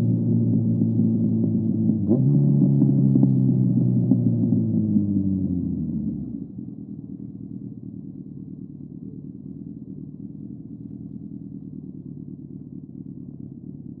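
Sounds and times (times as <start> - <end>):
motorcycle engine idling: 5.7 - 14.0.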